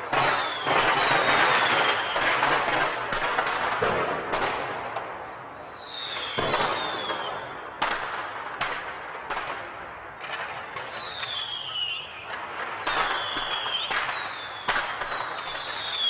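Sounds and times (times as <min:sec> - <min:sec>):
firework bangs and cracks: 0:00.0 - 0:16.0
firework whistles sliding down: 0:05.5 - 0:07.4, 0:10.9 - 0:16.0.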